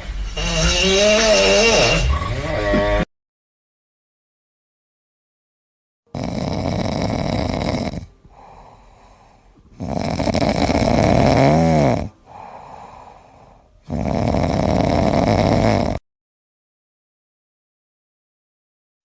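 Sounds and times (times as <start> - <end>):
person snoring: 0.3 - 3.1, 6.1 - 16.0
quiet breathing: 7.5 - 11.0, 12.0 - 14.1.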